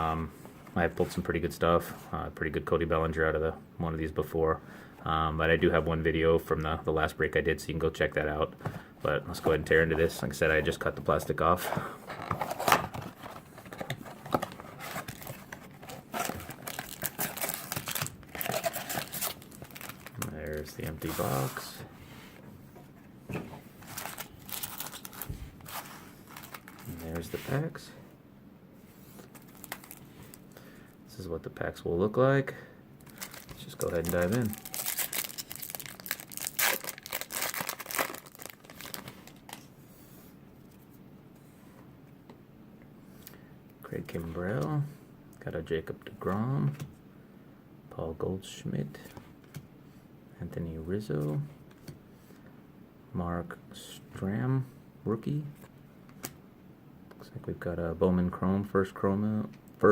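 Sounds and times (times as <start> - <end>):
cardboard and plastic wrap tearing: 14.0 - 21.6, 23.8 - 27.7, 33.0 - 39.7.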